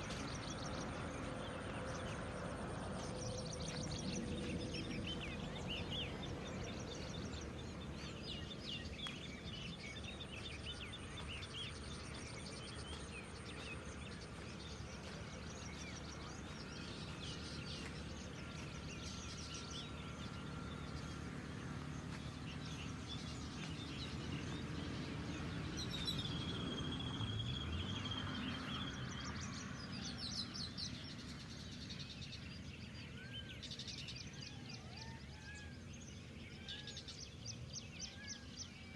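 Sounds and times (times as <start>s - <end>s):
low background rumble: 0.0s - 30.2s
birds chirping and calling: 3.0s - 29.0s.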